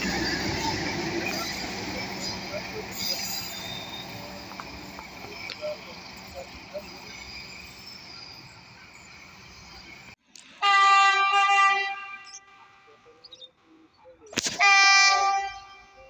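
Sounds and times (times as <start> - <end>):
shrill train horn blasts: 10.6 - 12.9, 14.6 - 16.0.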